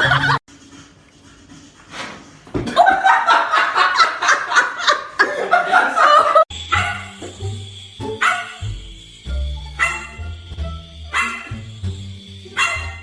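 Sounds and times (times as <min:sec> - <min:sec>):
person laughing: 0:00.0 - 0:00.4, 0:02.6 - 0:06.5
background music: 0:06.5 - 0:13.0.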